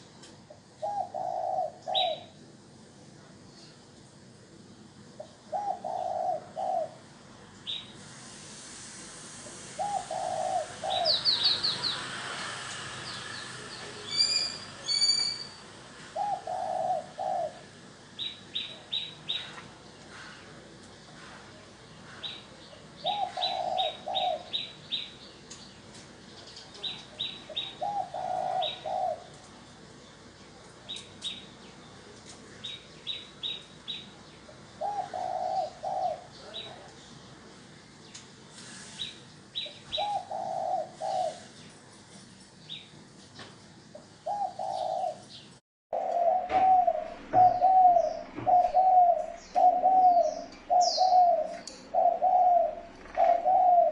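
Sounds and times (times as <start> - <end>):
dove cooing: 0.5 - 2.4, 5.2 - 7.1, 9.7 - 12.0, 16.0 - 17.8, 23.0 - 24.7, 26.8 - 29.6, 34.5 - 36.9, 39.6 - 41.6, 44.0 - 45.4, 46.0 - 53.9
small bird chirping: 13.0 - 15.6, 47.2 - 53.7.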